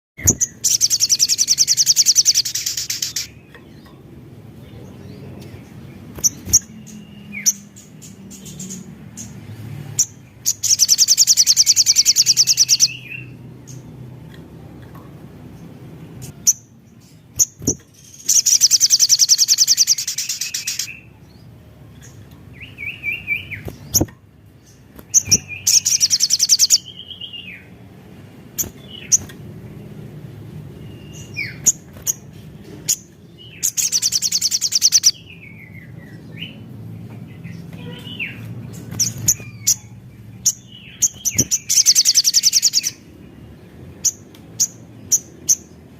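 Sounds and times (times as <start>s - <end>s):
bird singing rapid high trills: 0.2s - 14.1s, 15.6s - 45.9s.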